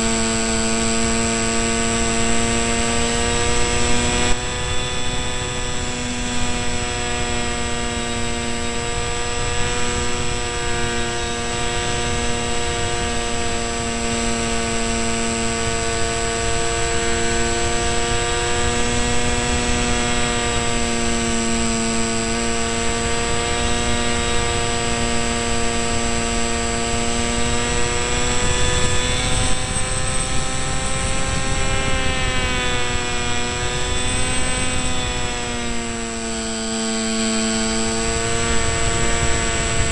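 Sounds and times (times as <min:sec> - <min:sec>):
model plane motor whining: 0:00.0 - 0:39.9
wind rush: 0:26.9 - 0:36.4, 0:37.4 - 0:39.9.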